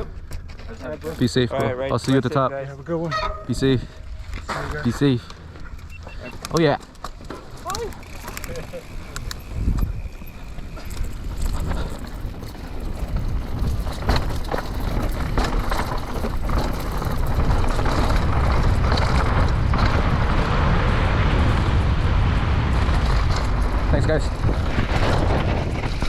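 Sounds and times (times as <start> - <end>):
bike clicks and rattles: 0.0 - 2.9, 3.5 - 26.0
tyres crunching over dirt and rock: 4.2 - 21.4
wind buffeting microphone: 7.2 - 26.0.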